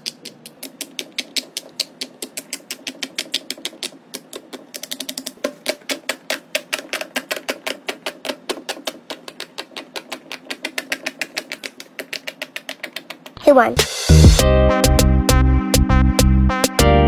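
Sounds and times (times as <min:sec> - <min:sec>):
fidget toy popping clicks: 0:00.0 - 0:13.4.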